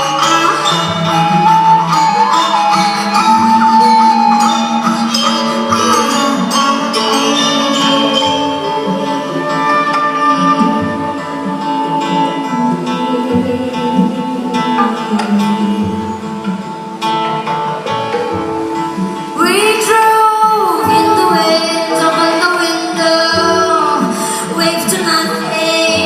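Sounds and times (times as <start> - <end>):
bending melody line: 0.0 - 26.0
gamelan ensemble music: 0.0 - 26.0.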